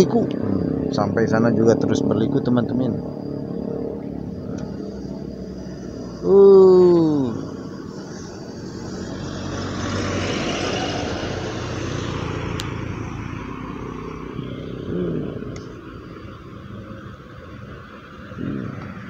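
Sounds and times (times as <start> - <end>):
vehicle passing by: 0.0 - 19.0.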